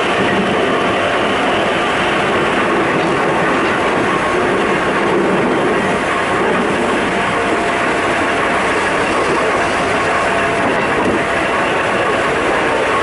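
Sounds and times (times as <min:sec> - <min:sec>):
rail-joint clatter: 0:00.0 - 0:13.0
train wheels rumbling on rail: 0:00.0 - 0:13.0.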